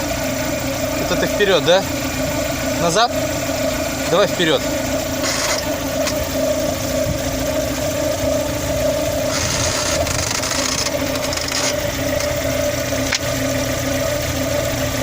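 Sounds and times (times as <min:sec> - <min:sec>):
car engine idling: 0:00.0 - 0:15.0
clutch actuator creaking: 0:05.1 - 0:06.2, 0:09.3 - 0:13.4.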